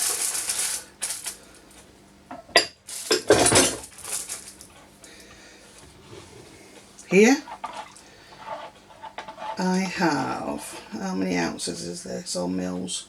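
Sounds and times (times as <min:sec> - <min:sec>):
dishes clattering: 0:02.3 - 0:03.9.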